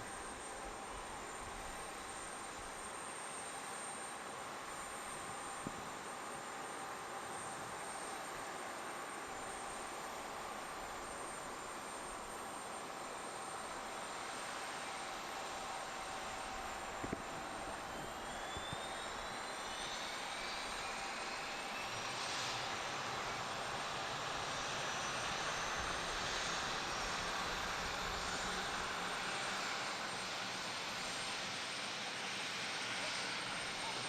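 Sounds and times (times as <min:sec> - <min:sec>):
jet engines rushing and whining: 0:00.0 - 0:34.0.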